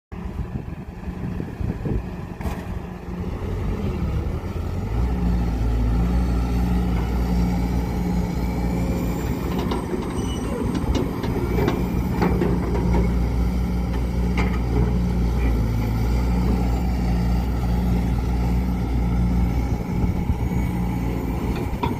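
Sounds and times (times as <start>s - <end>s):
excavator diesel engine: 0.1s - 21.9s
sharp metal knocks and clanks: 21.5s - 21.9s.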